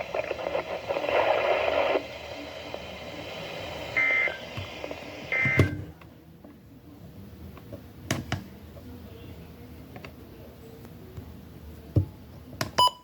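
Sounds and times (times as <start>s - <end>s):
static hiss: 0.0s - 6.0s
radio click: 0.0s - 6.1s.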